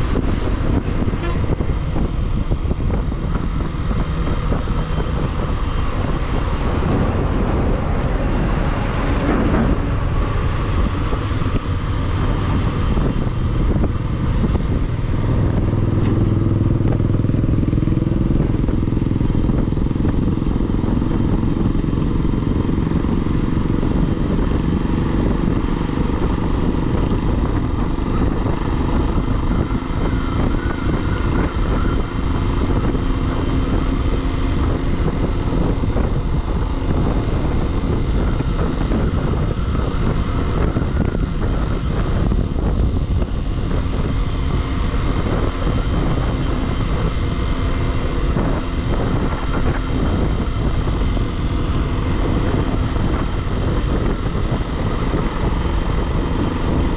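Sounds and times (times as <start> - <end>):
motorcycle engine riding: 0.0 - 56.9
wind rush on microphone: 0.0 - 56.9.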